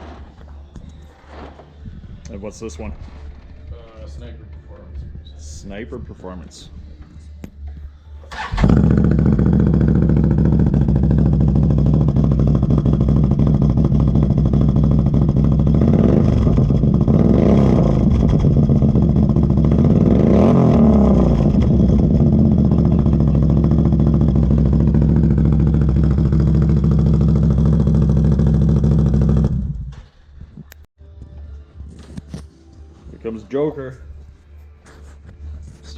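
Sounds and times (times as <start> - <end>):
off-road vehicle engine revving: 8.3 - 29.9.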